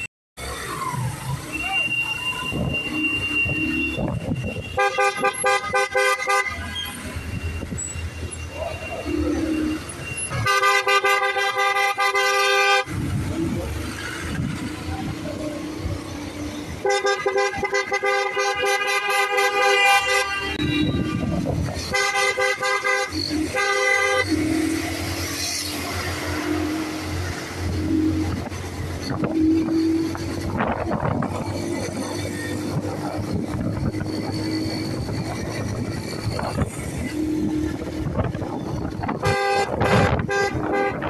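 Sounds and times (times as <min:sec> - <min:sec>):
road and wind noise: 0:00.0 - 0:41.0
vehicle horn honking: 0:02.5 - 0:06.9, 0:10.2 - 0:12.9, 0:16.8 - 0:24.5, 0:39.0 - 0:41.0.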